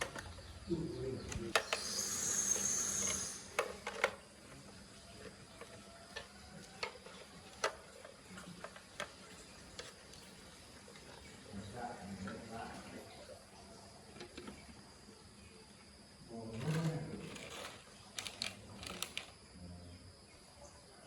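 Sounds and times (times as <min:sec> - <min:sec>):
hiss: 0:01.6 - 0:03.6.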